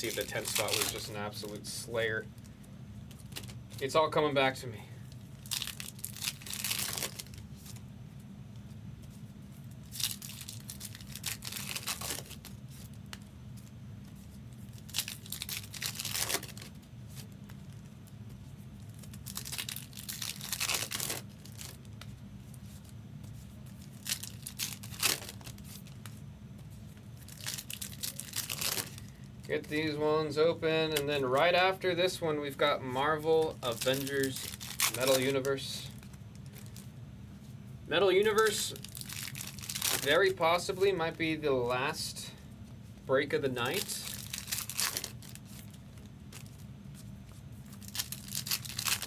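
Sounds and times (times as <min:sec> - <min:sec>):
card pack wrappers tearing and crinkling: 0:00.0 - 0:01.6, 0:03.1 - 0:03.9, 0:05.1 - 0:07.8, 0:09.8 - 0:13.7, 0:14.6 - 0:17.9, 0:18.8 - 0:21.9, 0:23.6 - 0:26.2, 0:27.0 - 0:30.0, 0:33.2 - 0:36.9, 0:38.0 - 0:40.9, 0:43.5 - 0:46.6, 0:47.3 - 0:49.0
steady low hum: 0:00.0 - 0:49.0.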